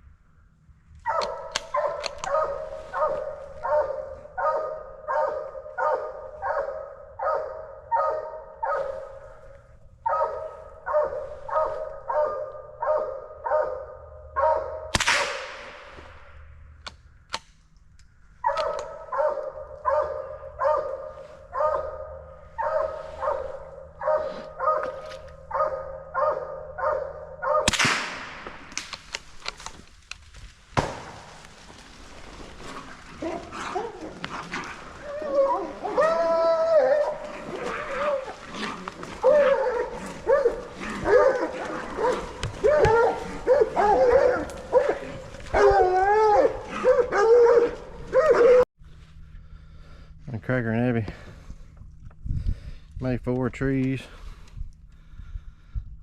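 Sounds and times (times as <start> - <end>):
dog barking rhythmically: 1.1 - 8.9, 10.0 - 14.9, 18.5 - 21.0, 25.5 - 27.7.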